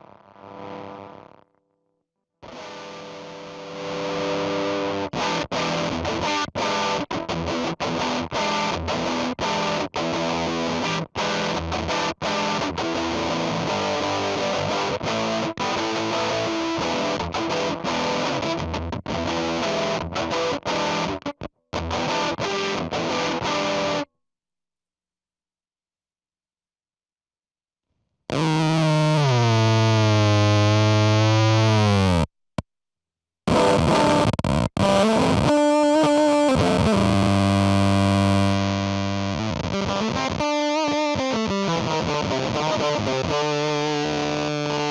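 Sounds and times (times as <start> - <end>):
fuzzy electric guitar riff: 2.4 - 24.1, 28.3 - 32.3, 33.5 - 44.9
fuzzed electric guitar note: 33.5 - 44.9.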